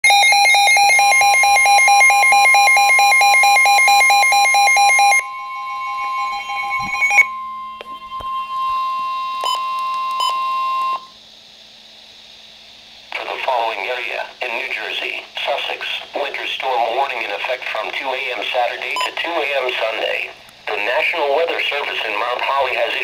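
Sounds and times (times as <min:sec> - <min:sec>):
pulsing electronic alarm tone: 0:00.0 - 0:11.2
steady electronic tone: 0:00.7 - 0:11.2.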